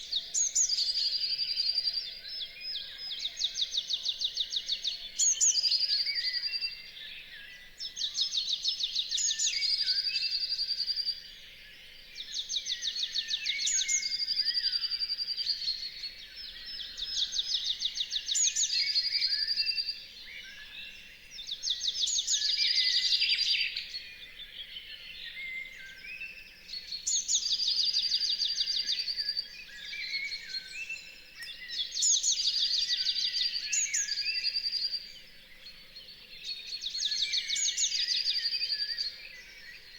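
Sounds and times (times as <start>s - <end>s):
bird trilling song: 12.3s - 39.9s.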